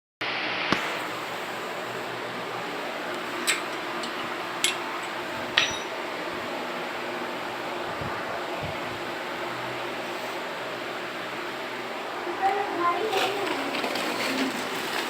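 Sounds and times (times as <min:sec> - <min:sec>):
metallic clinks of cage: 0:03.4 - 0:06.0.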